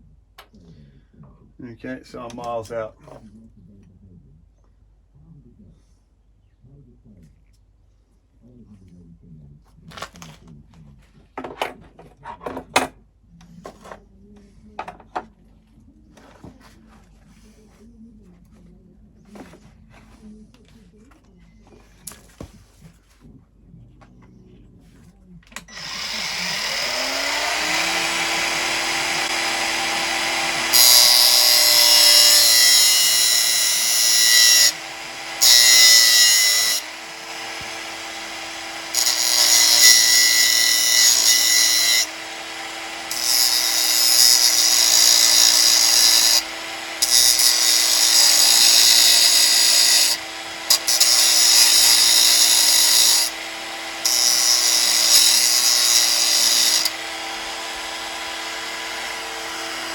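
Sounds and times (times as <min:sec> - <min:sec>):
angle grinder motor whine: 0:25.7 - 0:59.9
grinding steel in hissing bursts: 0:25.8 - 0:57.1.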